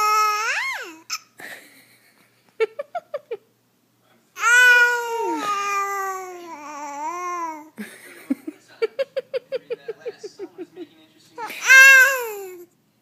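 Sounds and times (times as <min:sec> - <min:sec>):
baby crying: 0:00.0 - 0:01.3, 0:04.4 - 0:07.7, 0:11.4 - 0:12.7.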